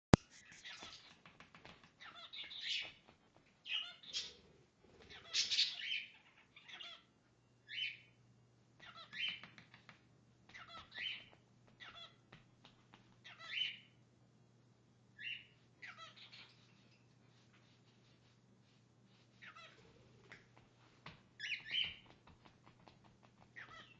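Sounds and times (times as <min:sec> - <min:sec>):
cockatiel chirping and whistling: 0:02.0 - 0:03.0, 0:05.1 - 0:07.0, 0:10.5 - 0:12.1, 0:13.2 - 0:13.9, 0:15.2 - 0:16.6, 0:21.4 - 0:22.1, 0:23.6 - 0:23.9.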